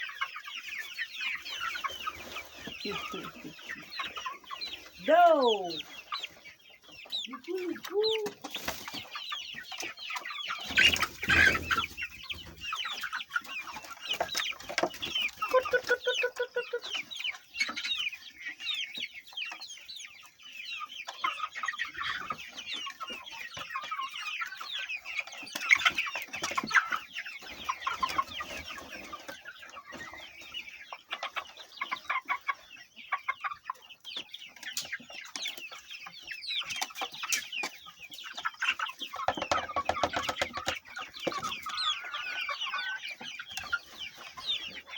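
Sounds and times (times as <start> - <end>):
chickens clucking: 0.0 - 44.9.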